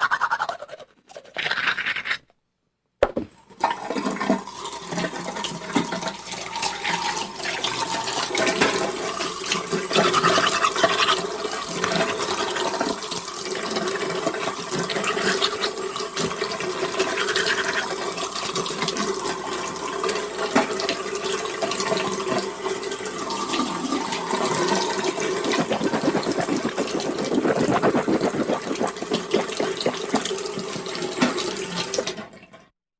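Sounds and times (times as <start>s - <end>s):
toothbrush scrubbing teeth: 0.0s - 2.3s, 9.5s - 13.8s, 14.8s - 19.1s, 23.9s - 32.1s.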